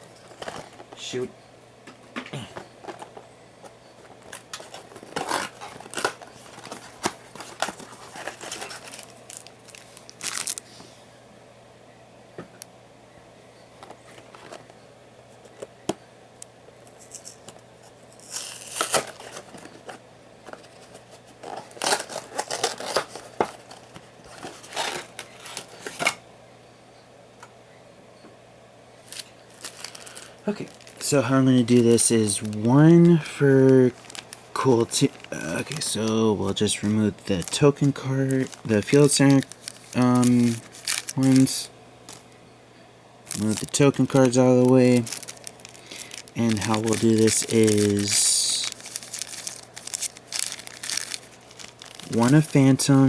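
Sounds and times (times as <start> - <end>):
plastic wrapping crinkling: 4.2 - 10.8, 18.2 - 26.2, 29.0 - 42.4, 43.2 - 53.0
cardboard tearing: 4.3 - 10.6, 18.2 - 19.8, 21.4 - 26.1, 29.1 - 42.2, 43.3 - 53.0.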